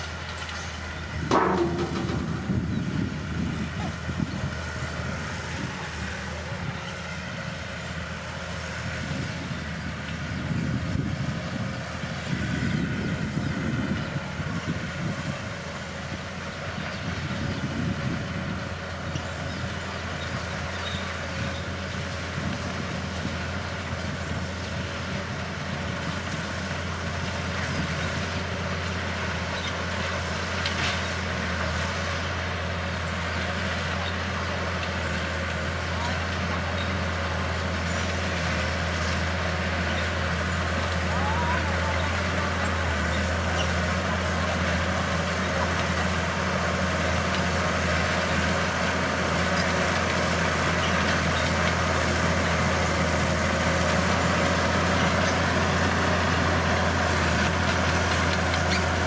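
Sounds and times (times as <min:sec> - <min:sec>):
bulldozer diesel engine running: 0:00.0 - 0:59.0.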